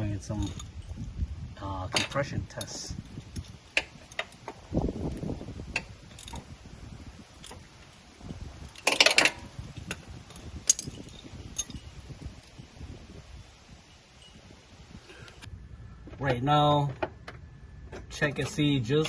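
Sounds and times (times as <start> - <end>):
metal tools clinking: 0.0 - 1.1, 1.9 - 5.2, 5.8 - 6.5, 7.4 - 12.7, 13.7 - 15.5.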